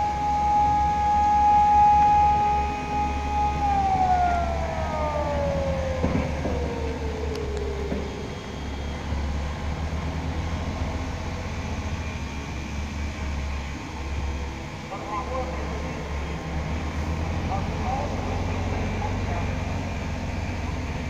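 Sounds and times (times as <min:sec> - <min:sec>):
high wailing tone sliding down: 0:00.0 - 0:11.2.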